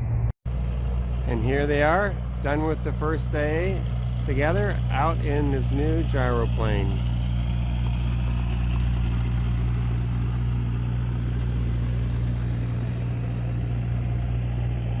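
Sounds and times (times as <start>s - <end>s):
gyroplane engine running: 0.0s - 15.0s.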